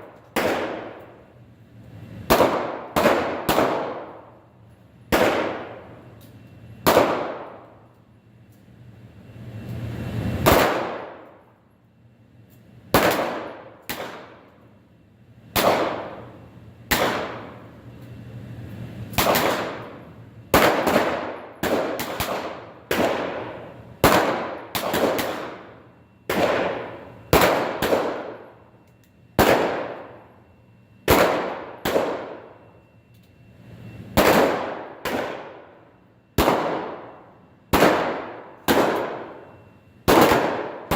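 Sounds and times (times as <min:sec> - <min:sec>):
pistol gunshots with echo: 0:00.0 - 0:01.1, 0:02.2 - 0:04.4, 0:05.1 - 0:05.9, 0:06.8 - 0:07.7, 0:10.4 - 0:11.4, 0:12.9 - 0:14.5, 0:15.6 - 0:16.2, 0:16.9 - 0:17.6, 0:19.2 - 0:28.5, 0:29.4 - 0:30.2, 0:31.1 - 0:32.5, 0:34.2 - 0:35.8, 0:36.4 - 0:40.9.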